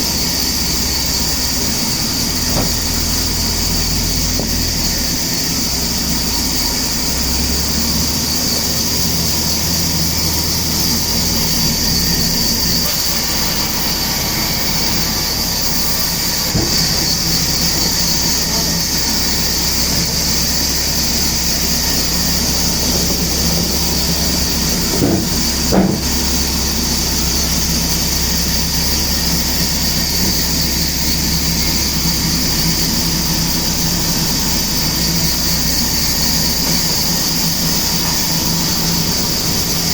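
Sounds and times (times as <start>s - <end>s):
sawmill machinery hissing: 0.0s - 39.9s
brief knocks: 24.7s - 26.3s.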